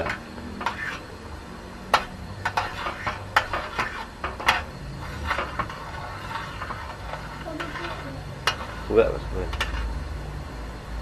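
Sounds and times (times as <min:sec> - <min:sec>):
utensil stirring liquid in a pot: 0:00.0 - 0:10.2.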